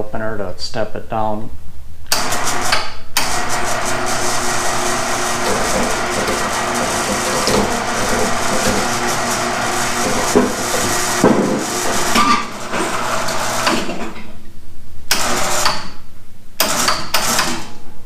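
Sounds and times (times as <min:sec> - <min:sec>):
electric motor humming: 0:02.1 - 0:14.0
mechanism knocking: 0:05.0 - 0:14.2.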